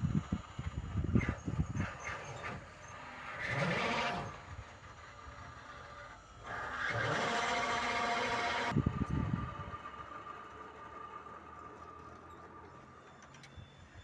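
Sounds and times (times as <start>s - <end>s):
wind gusts on microphone: 0.0s - 2.0s, 8.7s - 9.8s.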